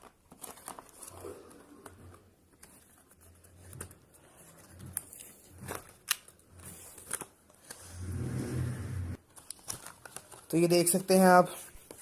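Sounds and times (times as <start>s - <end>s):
packaging rustling: 0.0s - 7.8s, 9.2s - 12.0s.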